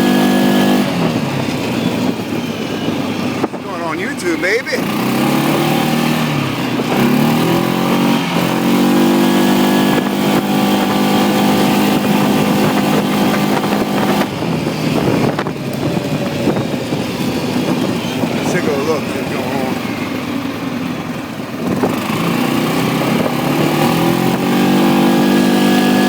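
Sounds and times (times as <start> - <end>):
atv engine running: 0.0 - 26.0.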